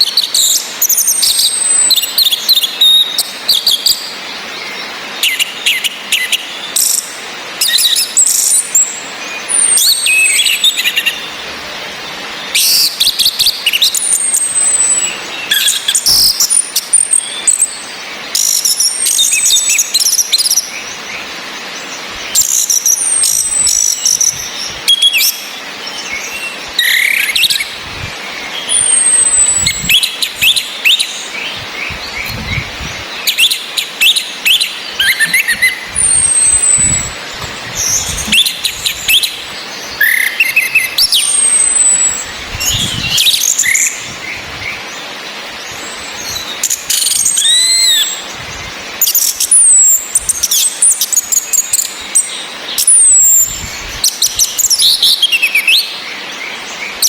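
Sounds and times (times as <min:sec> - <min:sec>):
rain hiss: 0:00.0 - 0:57.0
rapid chattering bird song: 0:00.0 - 0:57.0
thin high bird whistles: 0:31.9 - 0:44.0.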